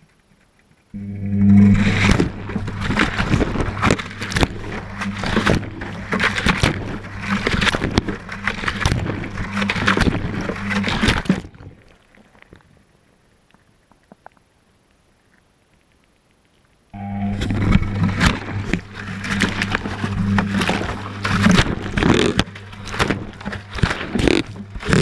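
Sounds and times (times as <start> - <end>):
washing machine motor hum: 1.0 - 11.5, 17.0 - 25.0.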